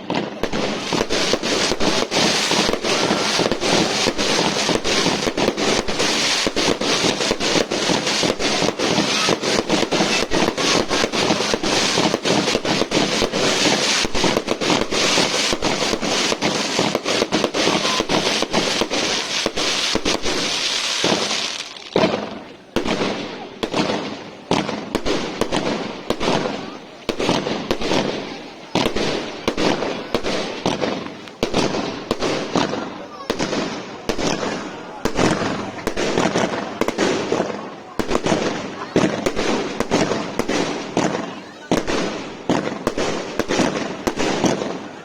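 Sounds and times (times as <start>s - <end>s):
fireworks bangs and crackling: 0.0s - 45.0s.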